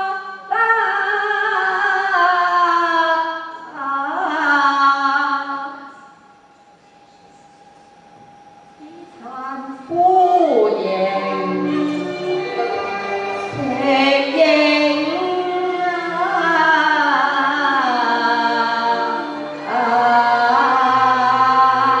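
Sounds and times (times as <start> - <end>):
accompanying ensemble: 9.6 - 22.0
sliding opera melody: 9.9 - 22.0.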